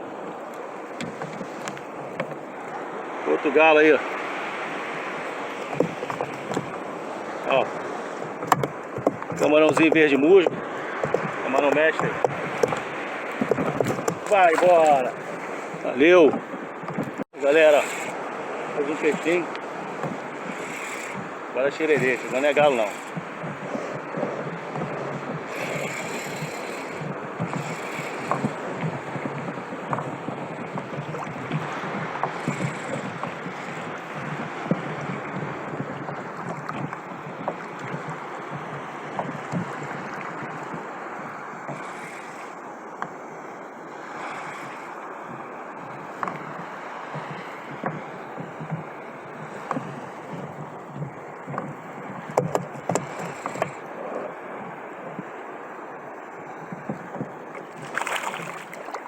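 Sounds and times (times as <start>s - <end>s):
water lapping around kayak: 0.0s - 59.0s
wind on microphone: 0.0s - 59.0s
small knocks: 8.4s - 14.7s, 49.5s - 53.8s.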